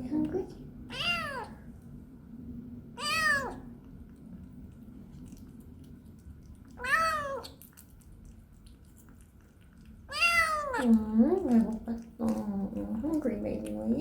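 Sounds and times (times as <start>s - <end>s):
kitten meowing: 0.9s - 1.6s, 3.0s - 3.6s, 6.8s - 7.5s, 10.1s - 10.9s.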